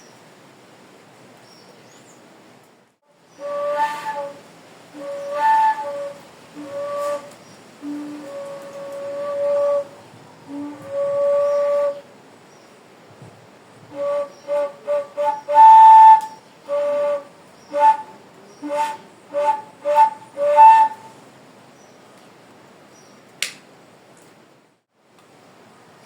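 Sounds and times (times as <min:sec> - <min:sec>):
sharp click: 0:23.4 - 0:23.6.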